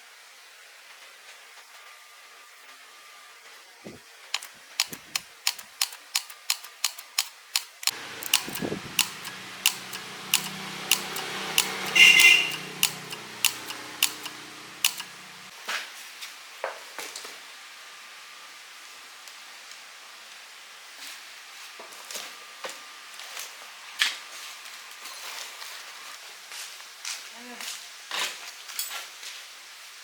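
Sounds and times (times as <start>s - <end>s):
sharp regular clicks: 4.4s - 15.5s
small motor humming: 4.4s - 15.5s.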